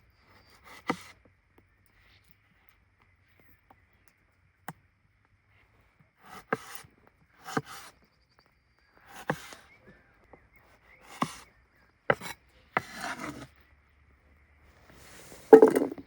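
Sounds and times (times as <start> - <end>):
hand tool scraping wood: 6.2 - 7.9, 9.1 - 9.7, 11.0 - 11.5, 12.1 - 13.5
knocks on wood: 15.5 - 16.0.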